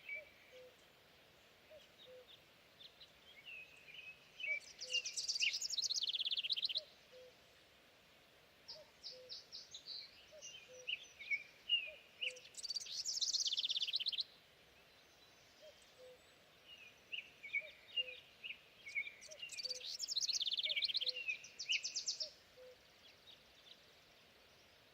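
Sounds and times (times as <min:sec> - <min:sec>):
songbird trilling: 0:04.4 - 0:07.3, 0:08.7 - 0:14.2, 0:18.9 - 0:22.8.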